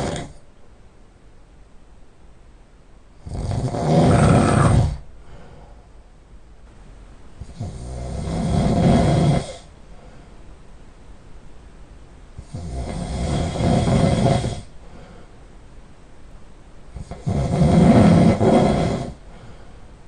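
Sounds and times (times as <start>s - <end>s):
man snoring heavily: 0.0s - 0.4s, 3.2s - 5.0s, 7.4s - 9.7s, 12.4s - 14.7s, 17.0s - 19.2s
quiet breathing: 3.1s - 6.3s, 7.4s - 10.7s, 12.3s - 15.7s, 16.9s - 20.0s.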